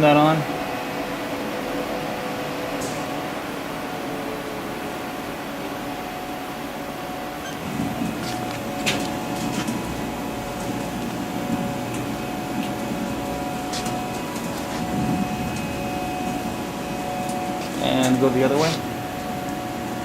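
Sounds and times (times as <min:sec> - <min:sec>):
machine auger humming: 0:07.4 - 0:20.0.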